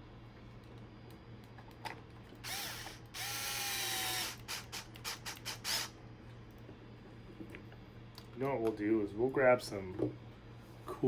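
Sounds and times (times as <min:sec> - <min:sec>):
screwdriver whirring: 0:02.4 - 0:06.0.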